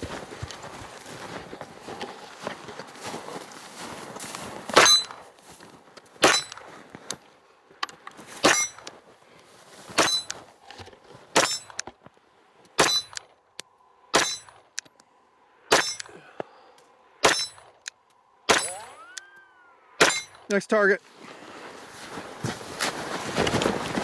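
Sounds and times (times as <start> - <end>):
steel target ringing: 4.8 - 5.2, 6.2 - 6.6, 8.4 - 8.9, 10.0 - 10.4, 11.4 - 11.8, 12.8 - 13.3, 14.1 - 14.7, 15.7 - 16.2, 17.2 - 17.8, 18.5 - 19.2, 20.0 - 20.6
pistol shots: 6.2 - 6.6, 12.8 - 13.3, 15.7 - 16.1, 17.2 - 17.8, 18.5 - 19.1, 20.0 - 20.4.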